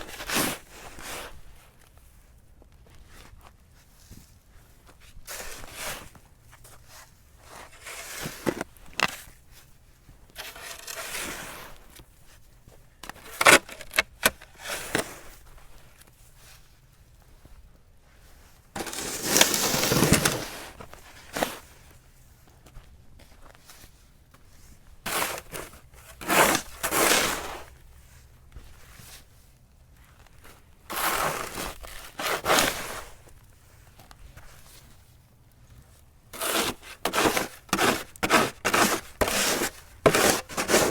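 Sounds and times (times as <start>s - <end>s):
shovel scraping snow: 0.0s - 1.4s, 5.3s - 6.2s, 7.0s - 9.3s, 10.4s - 11.9s, 13.1s - 15.4s, 18.8s - 21.7s, 25.1s - 27.7s, 30.9s - 33.2s, 36.4s - 40.9s.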